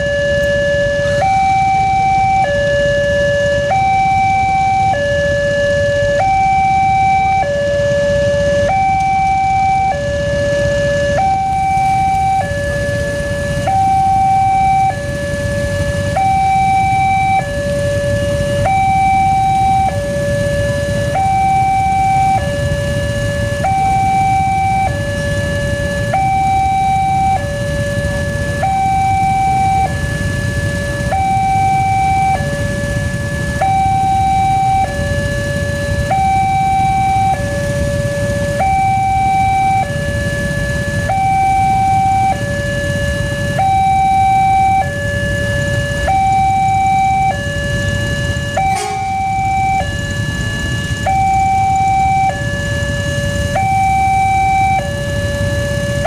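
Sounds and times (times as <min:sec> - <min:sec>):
low steady rumble: 0:00.0 - 0:56.0
two-tone crossing warning siren: 0:00.0 - 0:56.0.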